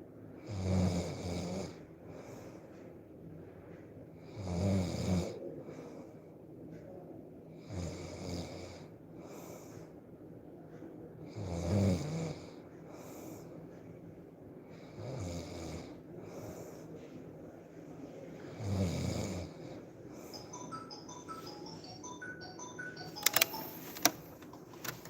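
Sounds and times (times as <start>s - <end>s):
soft breathing: 2.0s - 3.0s, 5.4s - 6.4s, 8.8s - 10.0s, 12.5s - 15.0s, 16.1s - 18.6s.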